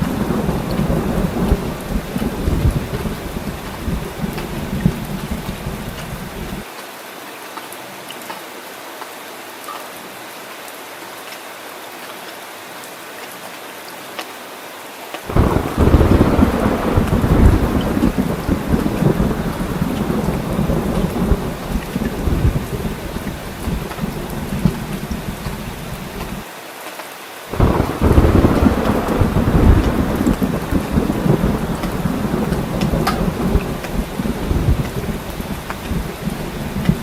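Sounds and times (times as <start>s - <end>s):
thunderclap with rolling rumble: 0.0s - 6.6s, 15.3s - 26.4s, 27.5s - 37.0s
heavy rain falling: 0.0s - 37.0s.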